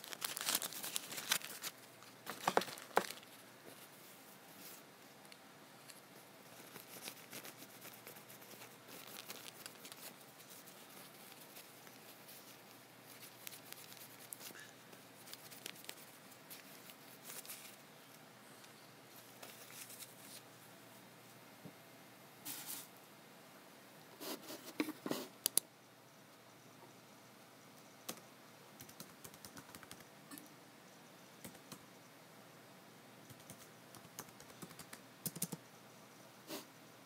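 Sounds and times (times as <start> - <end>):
keyboard and mouse clicking: 33.3 - 35.6.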